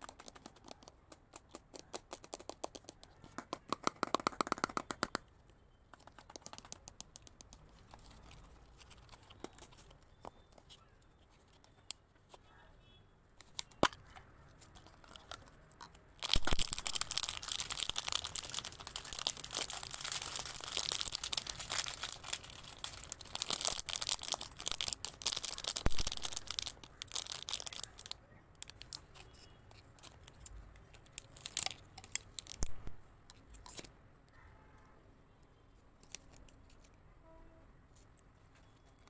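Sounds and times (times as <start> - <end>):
packaging tearing and crinkling: 16.2 - 29.1, 31.0 - 33.0.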